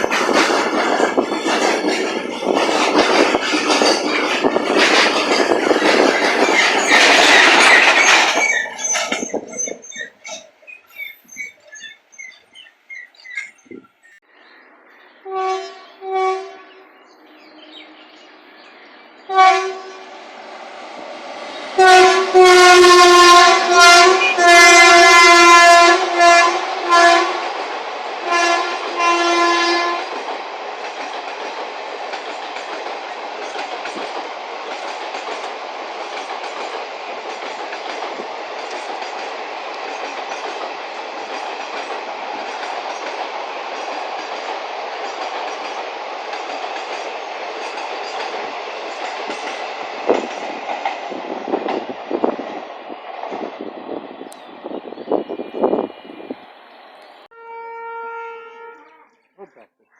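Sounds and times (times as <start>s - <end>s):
train wheels rolling: 0.0s - 14.2s, 16.9s - 57.3s
locomotive horn blasts: 15.2s - 16.8s, 19.3s - 20.2s, 21.8s - 27.5s, 28.2s - 30.1s, 57.3s - 59.1s.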